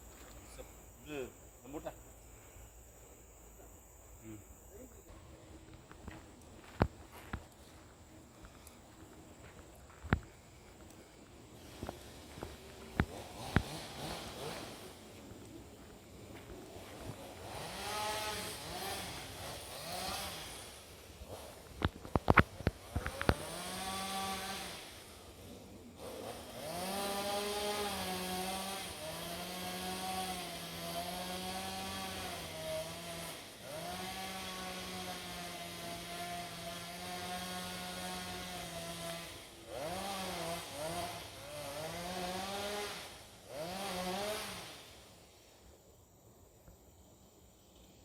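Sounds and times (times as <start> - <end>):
small engine revving: 10.8 - 45.6.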